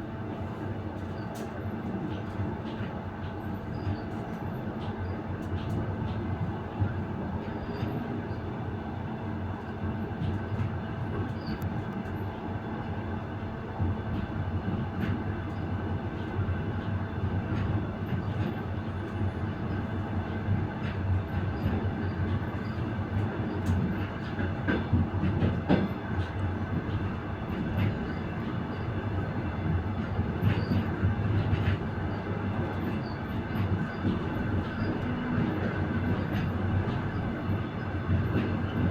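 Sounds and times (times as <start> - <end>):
train wheels rumbling: 9.6 - 38.9.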